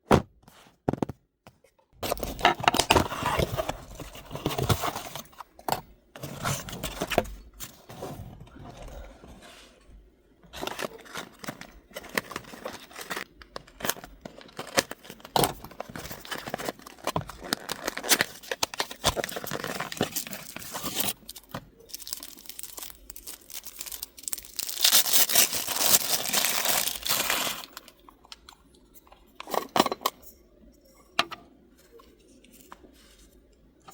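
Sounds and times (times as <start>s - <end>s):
paper and plastic tearing: 12.0s - 27.9s.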